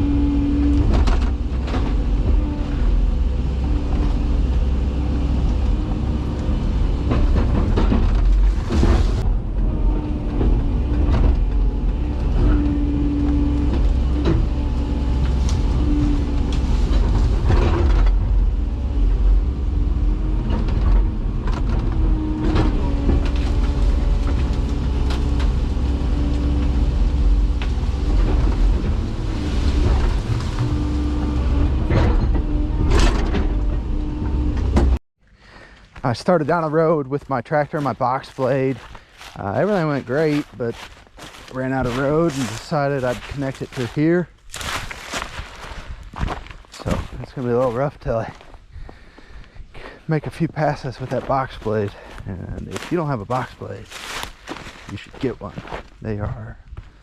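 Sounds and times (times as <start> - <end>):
excavator diesel engine: 0.0 - 35.0, 35.6 - 57.0
hydraulic whine: 0.0 - 35.0
wood cracking and snapping: 38.8 - 47.2, 52.8 - 56.0.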